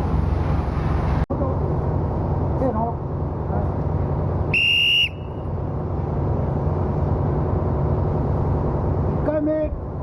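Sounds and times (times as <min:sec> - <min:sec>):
steady low rumble: 0:00.0 - 0:10.0
shrill whistle blast: 0:04.5 - 0:05.5.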